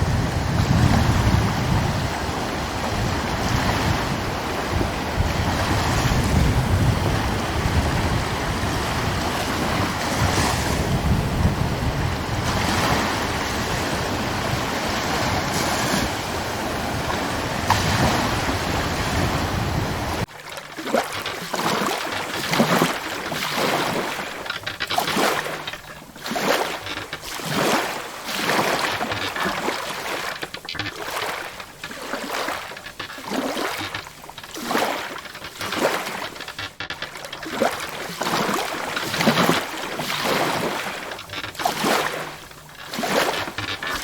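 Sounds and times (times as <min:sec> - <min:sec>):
ocean surf washing in: 0:00.0 - 0:20.3
wind rumbling on microphone: 0:00.0 - 0:20.3
small waves lapping: 0:00.0 - 0:44.0.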